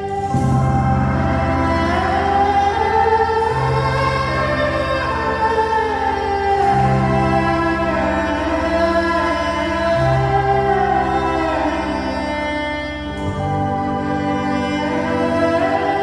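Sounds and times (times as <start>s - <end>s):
choir-like voices: 0.0s - 16.0s
deep bass notes: 0.0s - 16.0s.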